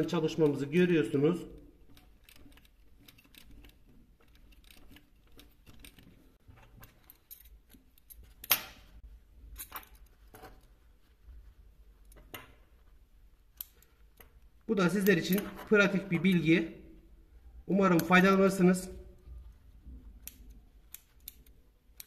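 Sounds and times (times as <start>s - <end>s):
small clicks of handling: 1.6s - 8.9s, 13.5s - 16.3s, 19.8s - 22.0s.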